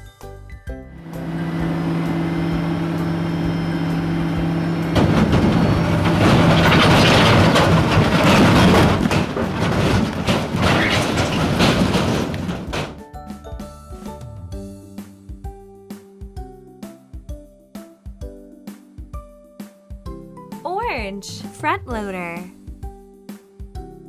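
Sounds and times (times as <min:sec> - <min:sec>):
truck engine hum: 0:01.0 - 0:07.8
loud rough rumbling: 0:04.6 - 0:12.9.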